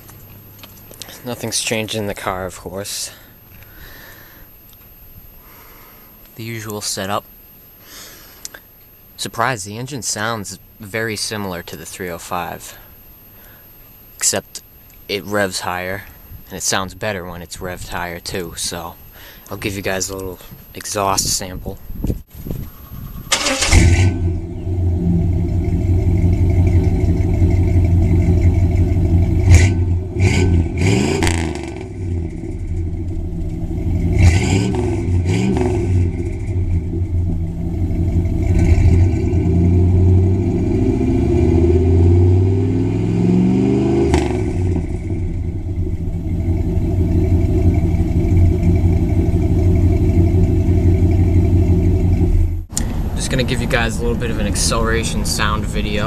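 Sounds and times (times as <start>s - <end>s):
car engine idling and revving: 23.4s - 56.0s.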